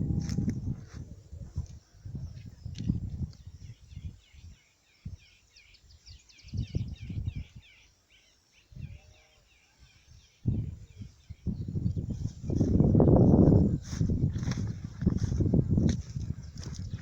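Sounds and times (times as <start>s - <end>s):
small bird chirping: 2.1s - 13.3s
low thumps and rumbles: 11.8s - 17.0s.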